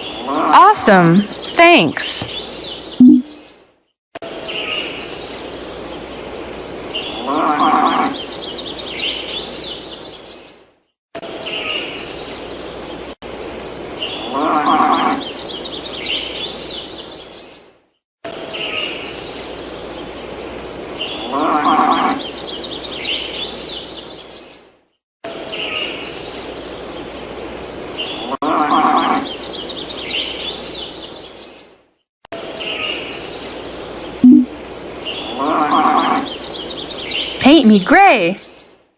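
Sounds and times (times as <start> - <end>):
birds chirping: 0.0 - 3.6.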